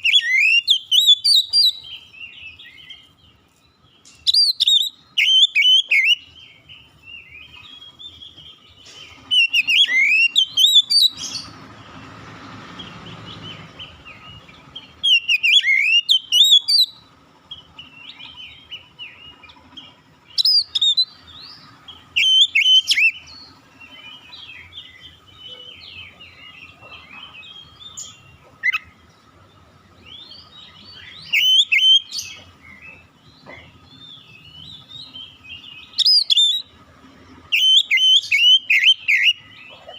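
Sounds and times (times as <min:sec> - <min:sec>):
magpie-robin whistled song: 0:00.0 - 0:11.6, 0:12.8 - 0:39.9
bird twittering: 0:00.0 - 0:12.0, 0:12.8 - 0:39.9.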